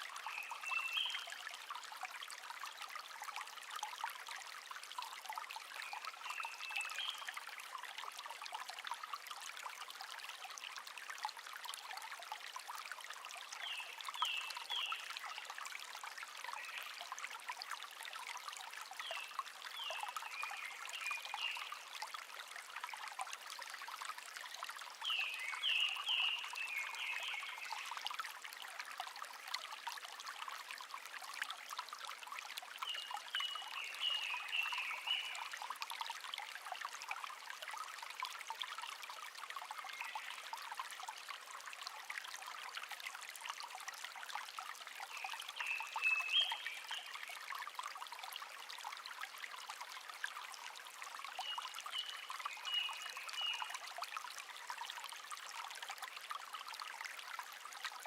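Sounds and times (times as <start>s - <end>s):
stream trickling over stones: 0.0s - 58.0s
songbird singing: 32.8s - 35.4s, 45.2s - 47.2s, 51.4s - 53.8s.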